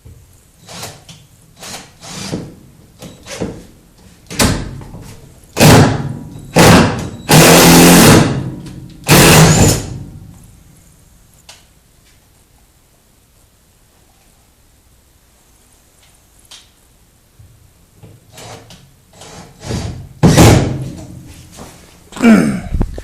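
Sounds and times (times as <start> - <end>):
loud bursts: 6.6 - 8.5, 9.1 - 10.0.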